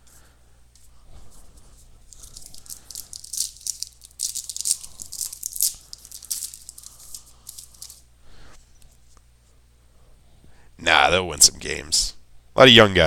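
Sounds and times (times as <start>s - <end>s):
trading cards rustling and flicking: 0.8s - 8.1s.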